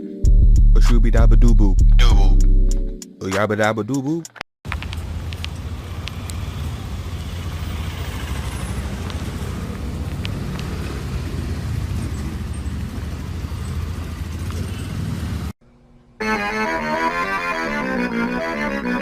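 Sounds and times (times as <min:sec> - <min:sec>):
motor vehicle running: 0:04.7 - 0:15.5.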